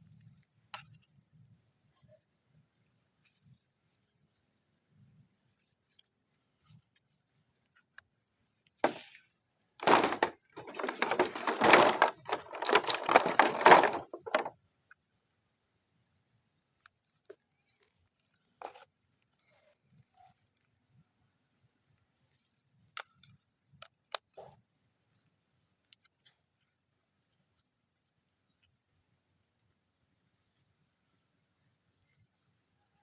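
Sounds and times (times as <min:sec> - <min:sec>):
toy packaging rustling and clattering: 0:08.8 - 0:09.1, 0:09.8 - 0:14.5.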